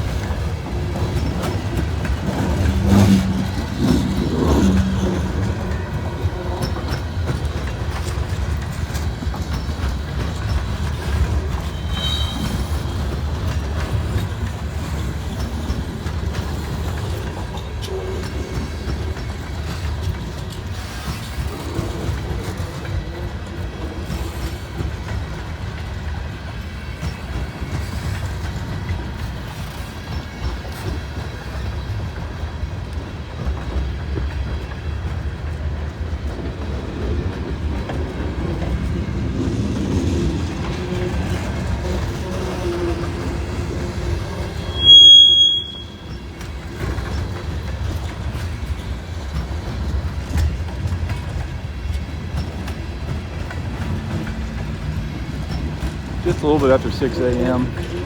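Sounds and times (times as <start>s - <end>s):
freight train rumbling on rails: 0.0s - 58.0s
high squeal: 11.7s - 13.0s, 44.2s - 46.2s.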